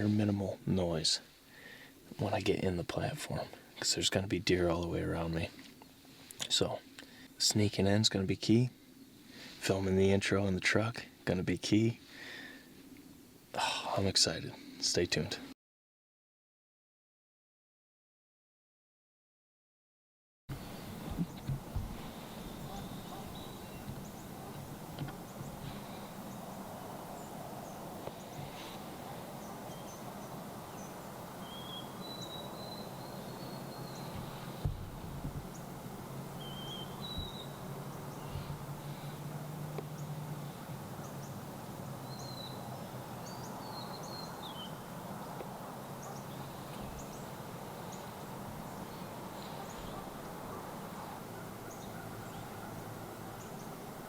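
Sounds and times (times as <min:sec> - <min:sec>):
steady background hiss: 0:00.0 - 0:15.6, 0:20.5 - 0:54.0
faint low hum: 0:20.5 - 0:54.0
small birds chirping: 0:20.5 - 0:54.0.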